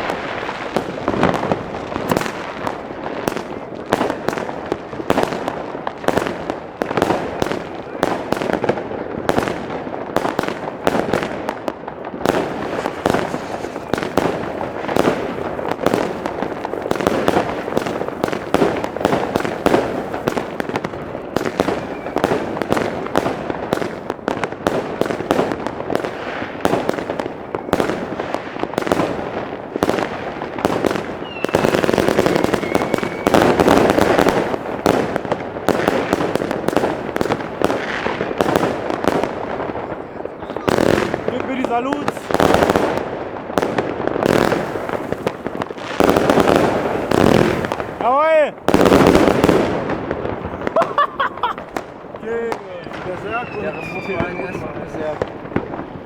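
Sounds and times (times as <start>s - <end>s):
fireworks bangs and crackles: 0.0s - 56.0s
firework whistle: 12.3s - 15.6s, 21.2s - 22.9s, 31.1s - 34.6s, 52.7s - 55.2s.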